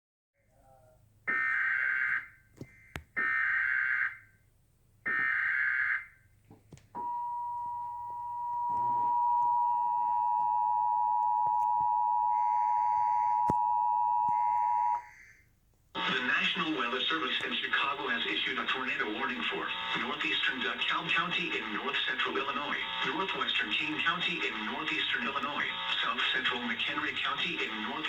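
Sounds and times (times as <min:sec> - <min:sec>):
digital data bursts: 0:16.0 - 0:28.0.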